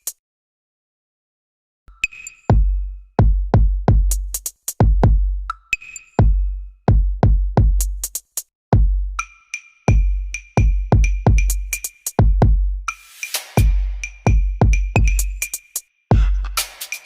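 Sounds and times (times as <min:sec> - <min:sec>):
electronic music with drum machine: 0:09.2 - 0:17.0.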